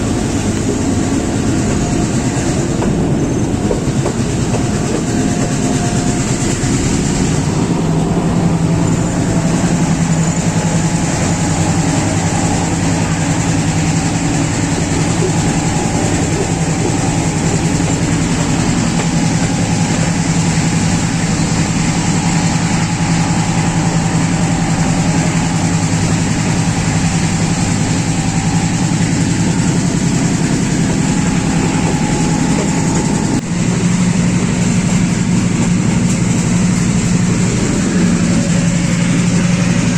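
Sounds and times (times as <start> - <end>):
diesel locomotive engine running: 0.0 - 39.9.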